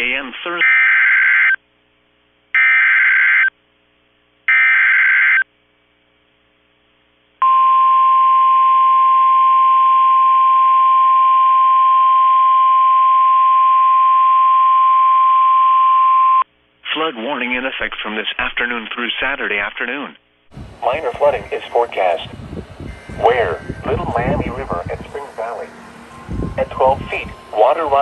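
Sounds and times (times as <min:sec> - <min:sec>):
steady warning alarm tone: 0:04.5 - 0:05.4, 0:22.8 - 0:28.0
data bursts: 0:26.1 - 0:28.0.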